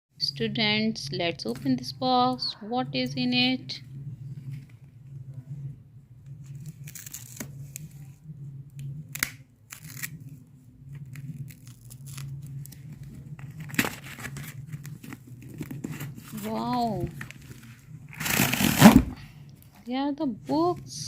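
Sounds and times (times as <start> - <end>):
packaging tearing and crinkling: 6.6 - 8.0, 9.1 - 10.3, 11.0 - 16.4, 17.2 - 19.1.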